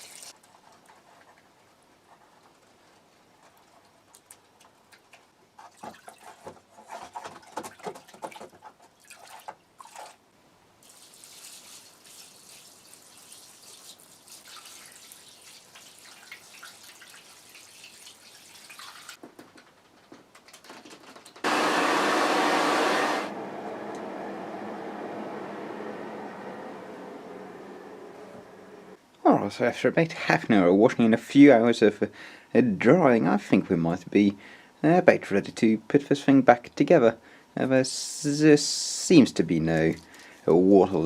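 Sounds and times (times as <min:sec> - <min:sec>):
water splashing in a tub: 0:04.9 - 0:10.2, 0:10.8 - 0:19.2
electric blower blowing air: 0:21.4 - 0:29.0.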